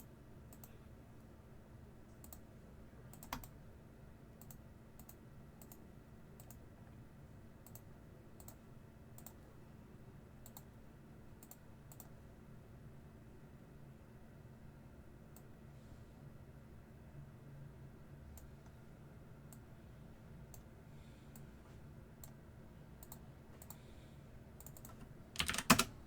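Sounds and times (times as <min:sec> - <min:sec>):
low room hum: 0:00.0 - 0:26.0
faint scattered clicking: 0:24.6 - 0:25.9.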